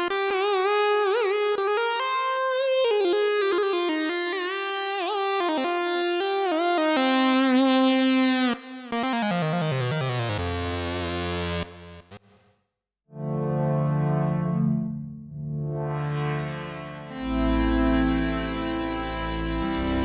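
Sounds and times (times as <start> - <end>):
buzzy synthesizer lead: 13.2 - 20.0.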